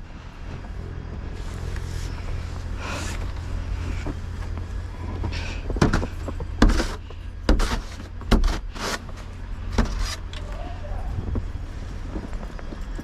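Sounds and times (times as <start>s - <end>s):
steady low rumble: 0.0s - 13.0s
sharp knocks and thumps: 3.9s - 10.3s.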